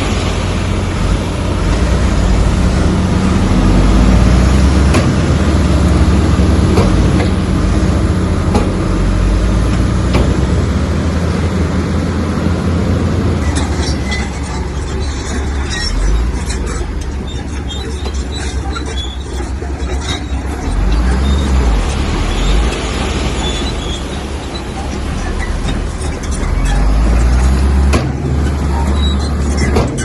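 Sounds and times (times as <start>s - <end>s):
bulldozer diesel engine under load: 0.0s - 30.0s
tracks and rock clanking: 0.9s - 10.9s.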